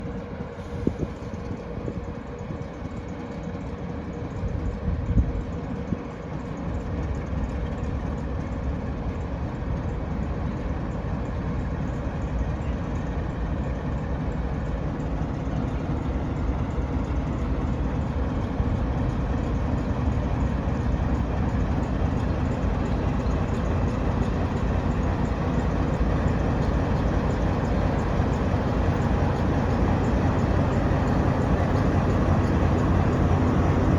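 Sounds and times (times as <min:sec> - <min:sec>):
diesel engine rumbling: 0:07.3 - 0:33.9.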